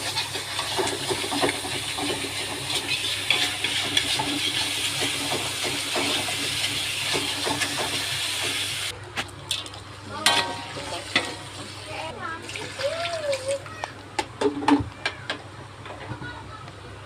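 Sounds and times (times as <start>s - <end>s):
food sizzling in hot oil: 0.0s - 8.9s.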